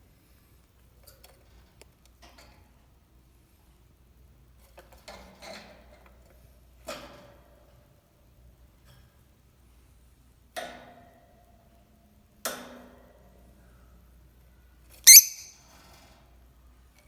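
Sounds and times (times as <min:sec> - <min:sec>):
parrot squeaking: 0:15.1 - 0:15.5.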